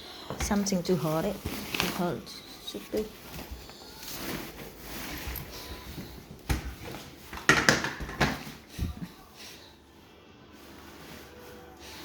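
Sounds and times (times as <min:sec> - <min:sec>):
stroller handling rustling: 0:00.4 - 0:07.5.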